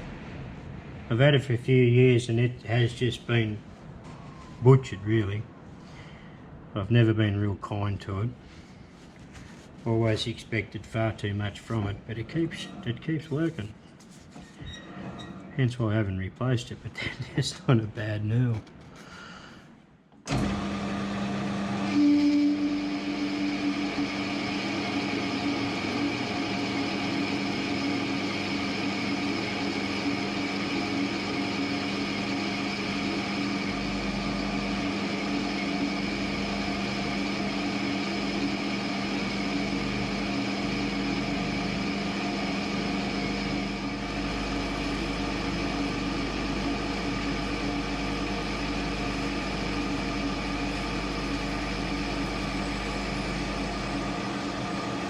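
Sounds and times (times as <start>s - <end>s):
metal lathe running: 20.3s - 55.0s
whining tones: 20.3s - 55.0s.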